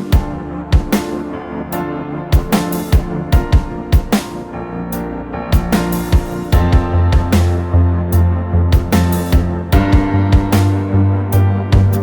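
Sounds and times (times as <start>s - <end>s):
electronic beat: 0.0s - 1.4s, 2.3s - 4.6s, 5.5s - 12.0s
held keyboard notes: 0.0s - 12.0s.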